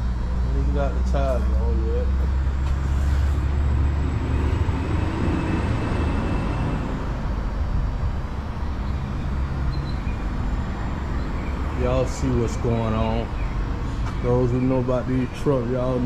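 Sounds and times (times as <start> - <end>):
shop noise: 0.0 - 7.3.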